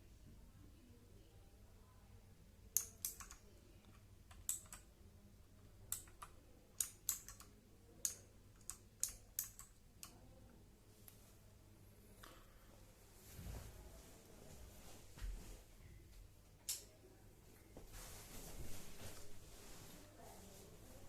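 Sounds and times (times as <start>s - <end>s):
mechanical keyboard clicks: 2.8s - 4.9s, 5.9s - 10.2s.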